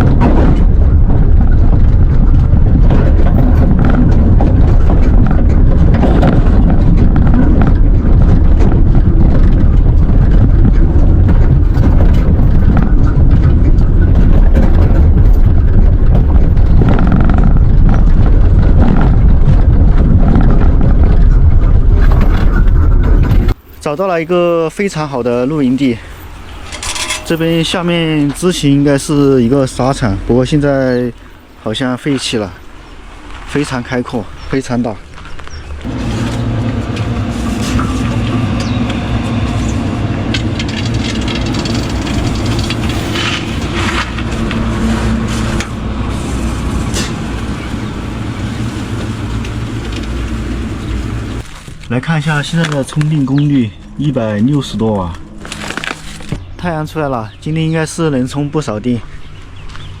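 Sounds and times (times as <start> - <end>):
vehicle rattles and knocks: 0.0 - 23.9, 24.9 - 60.0
rumble of tyres and wind: 0.0 - 60.0
tyre noise on rough ground: 31.7 - 56.8
electric motor hum: 35.9 - 51.4.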